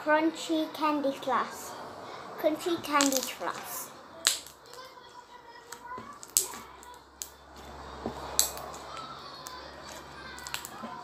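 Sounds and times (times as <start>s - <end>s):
crunchy slime crackling: 2.7s - 11.0s.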